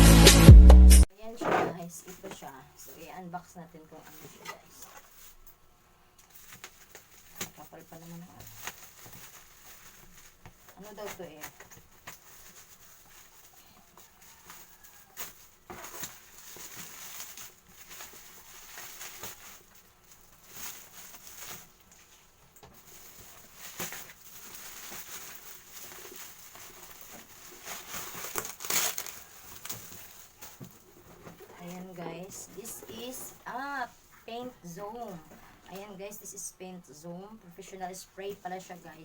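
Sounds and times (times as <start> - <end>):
packaging rustling and crinkling: 3.9 - 36.2
packaging ripping: 6.3 - 22.1, 22.7 - 31.4.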